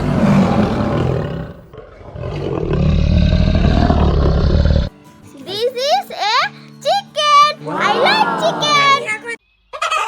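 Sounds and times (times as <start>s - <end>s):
lion roaring: 0.0s - 4.9s.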